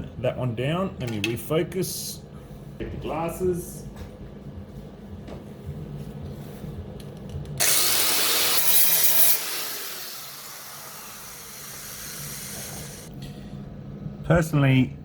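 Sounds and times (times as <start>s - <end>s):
grinder grinding steel: 7.6s - 13.1s.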